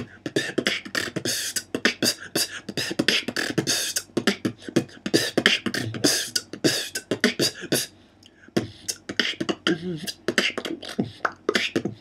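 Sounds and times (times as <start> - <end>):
vocal beatboxing: 0.0 - 12.0.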